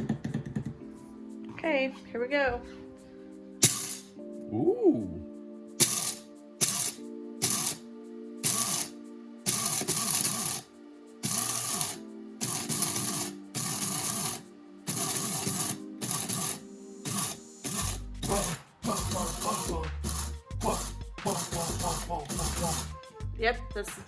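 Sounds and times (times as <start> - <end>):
coffee grinder grinding beans: 3.6 - 4.1, 5.8 - 7.8, 8.4 - 23.0.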